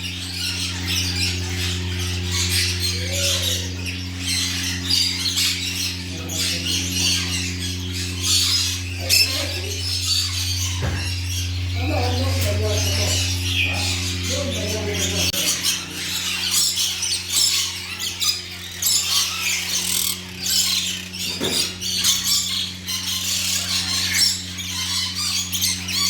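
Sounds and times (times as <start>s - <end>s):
low hum: 0.0s - 16.4s
small birds chirping: 0.0s - 26.0s.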